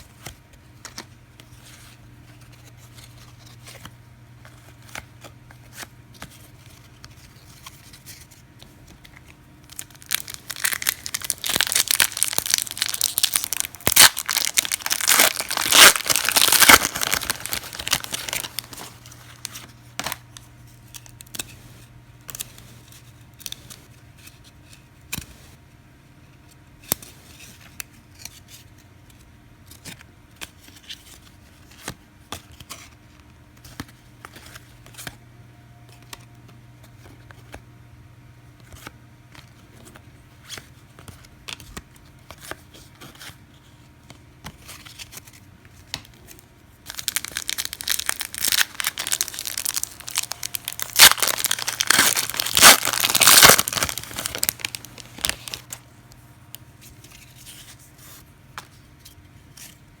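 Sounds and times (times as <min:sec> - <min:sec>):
wrapper tearing and crinkling: 0:09.7 - 0:20.2, 0:46.8 - 0:55.8.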